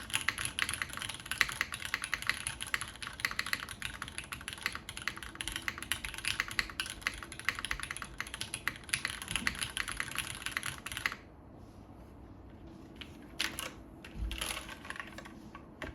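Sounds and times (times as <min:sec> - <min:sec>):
fast typing on mechanical keyboard: 0:00.0 - 0:11.3, 0:13.4 - 0:15.9.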